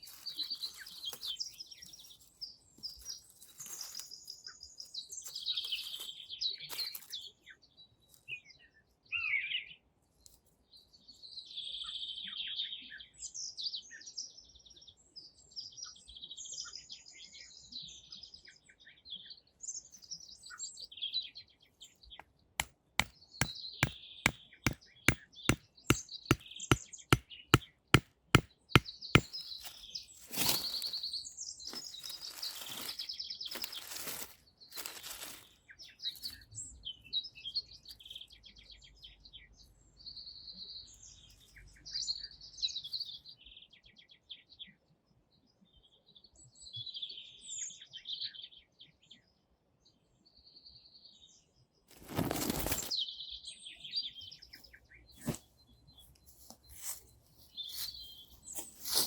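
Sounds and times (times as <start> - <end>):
rustling: 0.0 - 4.3, 29.2 - 36.4, 51.9 - 52.9
songbirds singing and chirping: 0.0 - 59.0
sharp evenly spaced knocks: 22.6 - 29.4.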